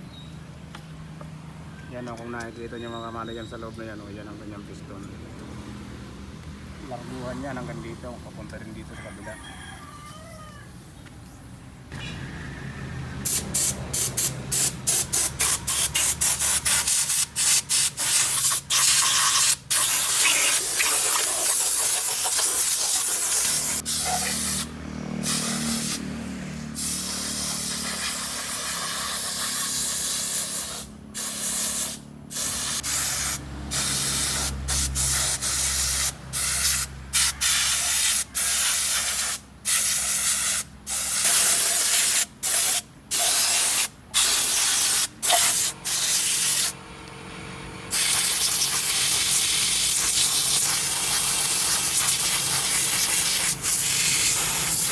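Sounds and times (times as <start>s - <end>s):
pressurised spray hissing: 13.2s - 26.0s, 26.8s - 46.7s, 47.9s - 54.9s.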